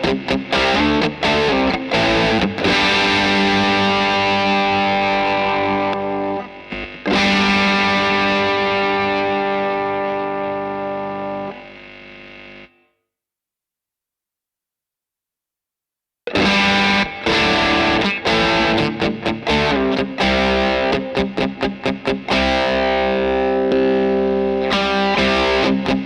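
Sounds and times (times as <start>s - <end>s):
distorted electric guitar chords: 0.0s - 13.0s, 16.3s - 26.0s.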